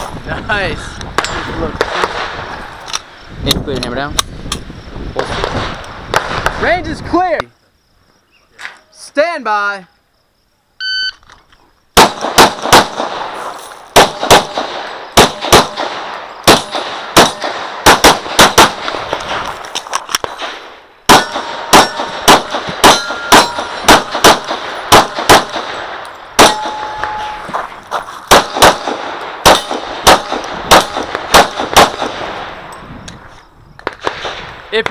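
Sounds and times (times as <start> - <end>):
pistol shots: 12.0 - 19.3, 20.1 - 27.3, 28.3 - 32.6
steel target ringing: 21.1 - 24.1, 26.4 - 27.5.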